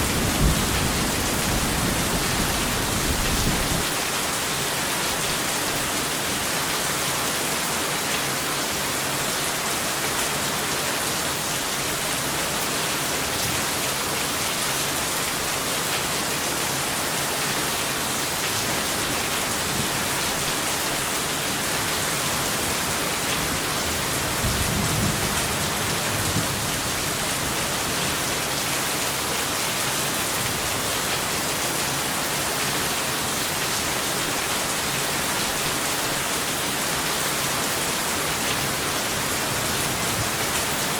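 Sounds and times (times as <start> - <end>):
low rumble of thunder: 0.0 - 3.9, 23.9 - 27.1.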